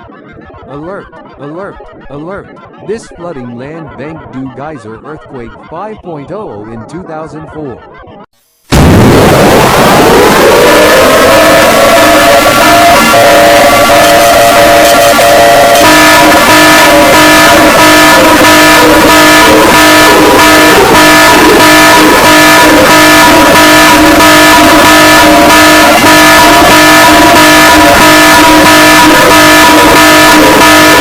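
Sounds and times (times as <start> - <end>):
pulsing emergency alert alarm: 8.8 - 31.0.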